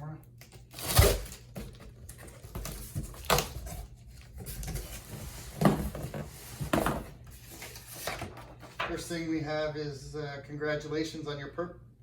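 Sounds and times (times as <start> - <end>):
cardboard box rustling: 0.8 - 8.8.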